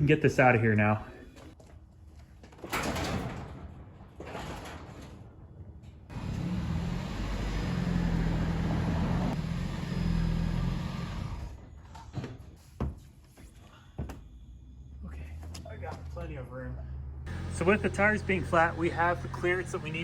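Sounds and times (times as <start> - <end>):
car running with low hum: 6.1 - 11.6, 14.3 - 20.0.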